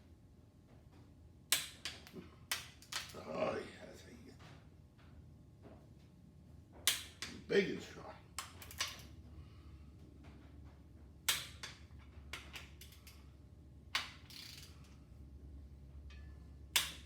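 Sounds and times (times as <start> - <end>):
torque wrench clicking: 14.0 - 15.0.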